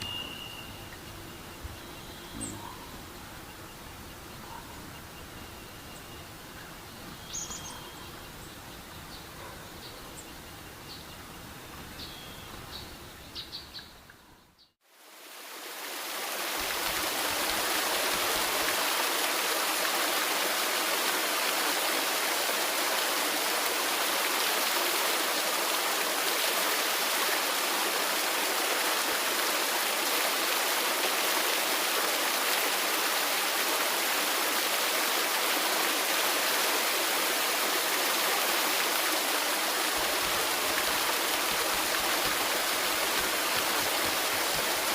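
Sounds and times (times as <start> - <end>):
bird chirps: 0.0 - 11.3
waterfall rushing: 15.1 - 44.9.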